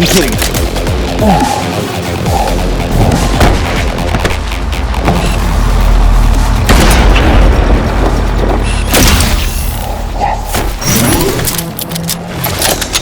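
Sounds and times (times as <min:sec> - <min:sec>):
background music: 0:00.0 - 0:13.0
deep booming hits: 0:02.7 - 0:09.8.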